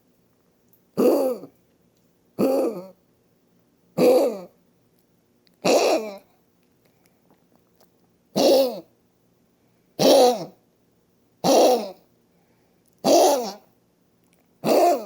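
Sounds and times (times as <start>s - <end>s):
dog coughing: 1.0s - 1.5s, 2.4s - 3.0s, 4.0s - 4.6s, 5.6s - 6.3s, 8.4s - 8.9s, 10.0s - 10.6s, 11.4s - 12.0s, 13.0s - 13.6s, 14.6s - 15.0s.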